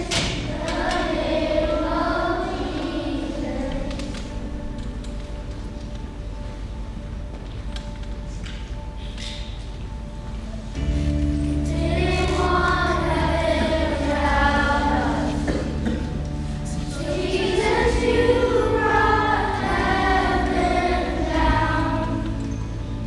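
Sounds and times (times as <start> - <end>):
children singing together: 0.0 - 5.0, 10.8 - 23.0
instrumental accompaniment: 0.0 - 23.0.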